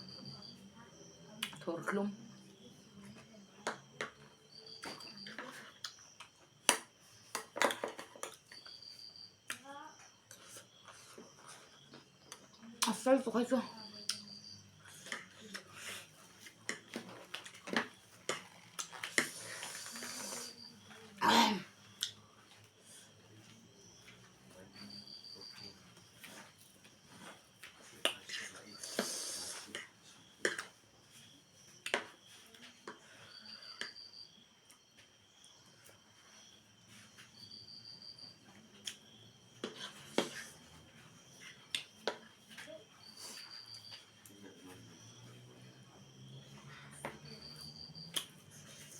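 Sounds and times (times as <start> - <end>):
eating and handling food: 2.6 - 13.1, 13.8 - 48.9
insect trilling: 18.4 - 21.6
hiss: 19.1 - 20.7, 28.8 - 29.8.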